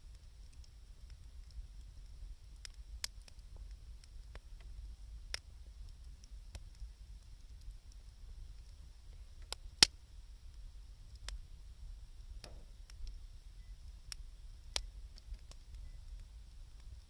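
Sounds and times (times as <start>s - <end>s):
wood fire crackling: 0.0s - 17.0s
sharp pops of fire: 9.4s - 10.1s, 12.3s - 13.2s.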